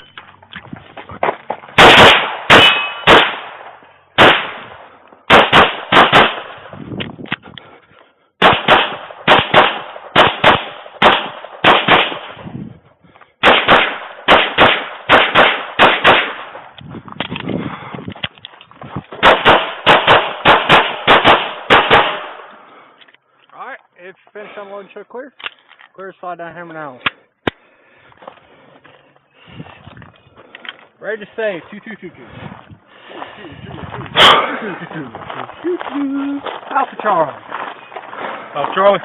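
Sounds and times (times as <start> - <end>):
rapid handgun fire: 1.8 - 6.8, 8.4 - 12.4, 13.4 - 16.7, 19.2 - 22.5.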